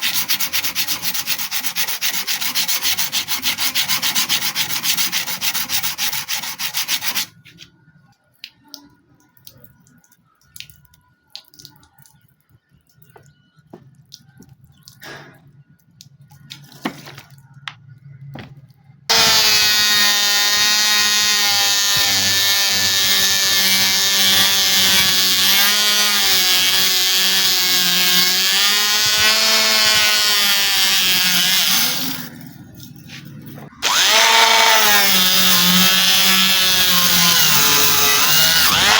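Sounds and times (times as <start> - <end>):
abrasive sanding on metal: 0.0 - 7.3
electric power tool whining: 19.1 - 32.3, 33.8 - 38.9.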